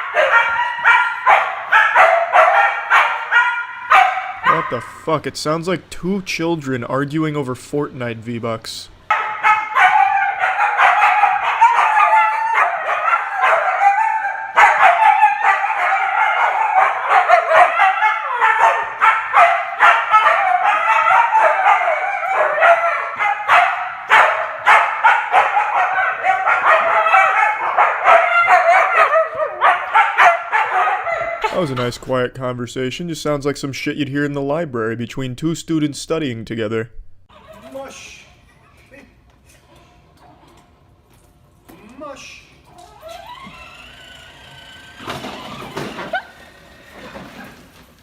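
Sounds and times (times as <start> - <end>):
huskies howling and yowling: 0.0 - 4.6, 9.1 - 31.5.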